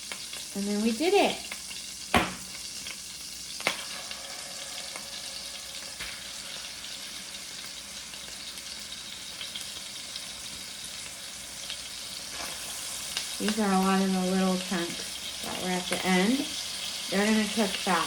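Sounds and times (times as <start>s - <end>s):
steaks sizzling in a frying pan: 0.0s - 18.0s
sharp knock: 2.1s - 2.5s.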